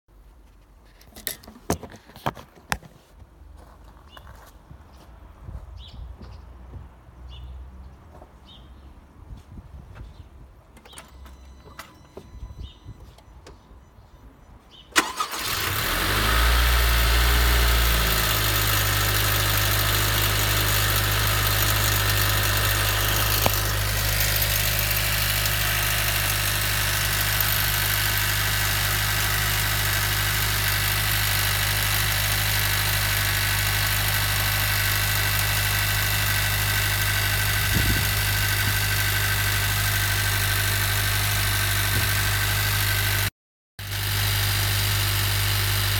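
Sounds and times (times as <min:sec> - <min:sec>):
car engine starting and idling: 0:14.9 - 0:45.9.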